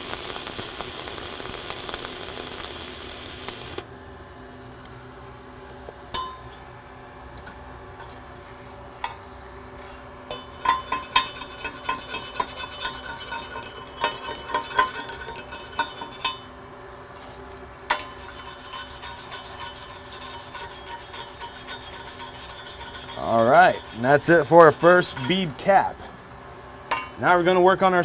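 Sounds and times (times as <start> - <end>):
welding arc crackle: 0.0 - 3.9
welding pops and spatter clinks: 0.0 - 3.9.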